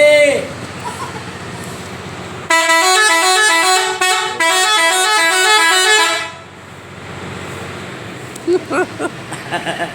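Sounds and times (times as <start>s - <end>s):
multi-tone musical bus horn: 2.4s - 6.6s.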